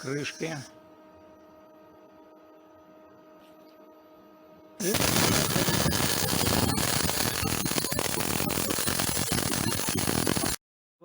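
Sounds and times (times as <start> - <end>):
welding arc crackling: 4.8 - 10.6.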